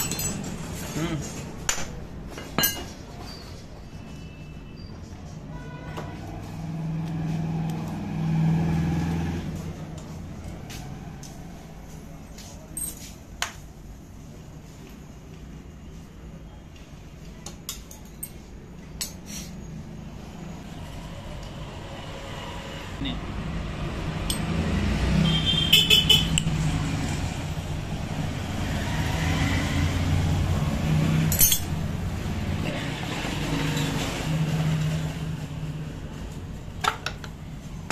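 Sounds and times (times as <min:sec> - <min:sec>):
sharp metallic clinks: 0:00.0 - 0:00.6, 0:31.3 - 0:31.8
vehicle engine passing: 0:06.2 - 0:12.0, 0:19.8 - 0:36.3.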